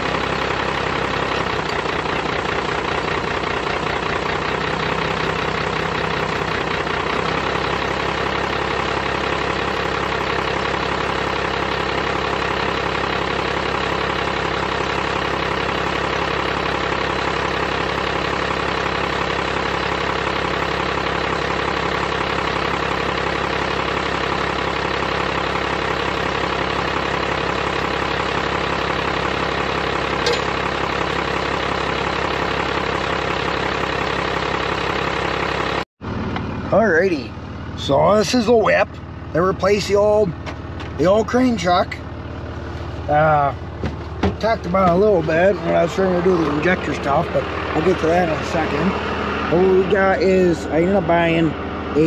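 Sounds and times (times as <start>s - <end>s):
diesel engine idling: 0.0s - 52.0s.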